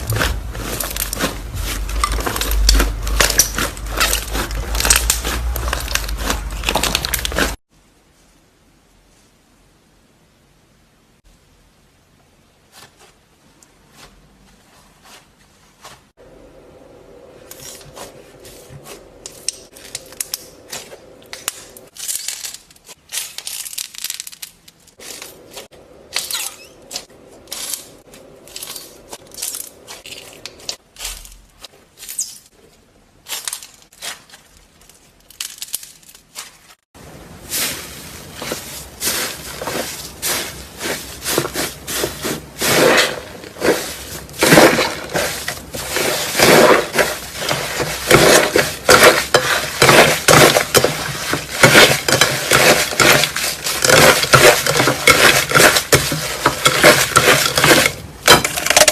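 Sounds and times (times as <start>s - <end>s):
crunchy slime crackling: 0.0s - 7.6s, 33.2s - 58.9s.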